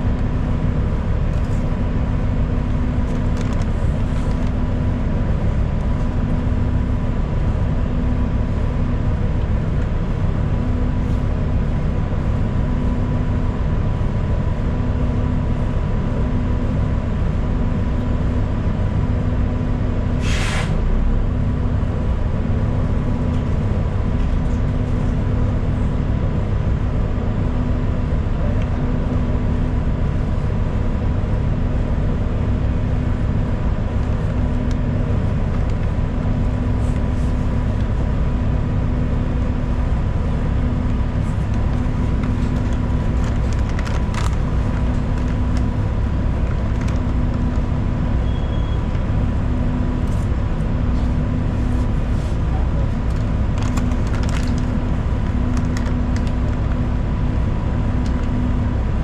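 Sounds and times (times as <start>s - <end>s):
bus engine and road rumble: 0.0s - 59.0s
short hiss: 20.2s - 20.8s
low hum: 20.8s - 59.0s.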